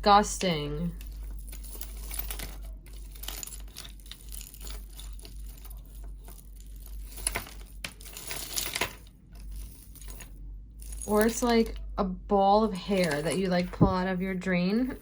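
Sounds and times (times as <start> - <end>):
beads clicking and rattling: 0.9 - 11.9, 12.9 - 13.6.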